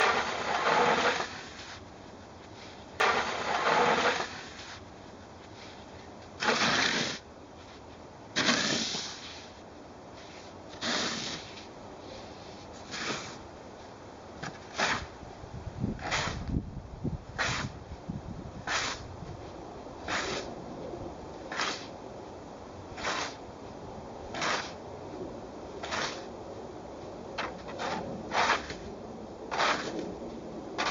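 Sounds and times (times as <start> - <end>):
snow shovel scraping snow: 0.0 - 1.8, 2.5 - 4.8, 5.5 - 7.8, 8.4 - 9.6, 10.2 - 13.4, 14.7 - 15.1, 16.0 - 16.5, 17.4 - 17.8, 18.7 - 19.1, 20.0 - 20.6, 21.5 - 22.0, 23.0 - 23.4, 24.3 - 24.8, 25.8 - 26.3, 27.4 - 28.9, 29.5 - 30.1.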